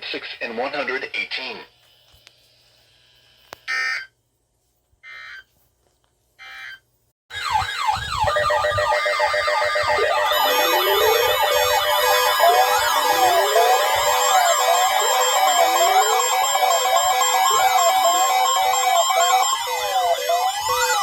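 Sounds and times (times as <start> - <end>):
electronic siren wails: 7.3 - 21.0
steady electronic tones: 9.8 - 21.0
electronic data bursts: 10.0 - 21.0.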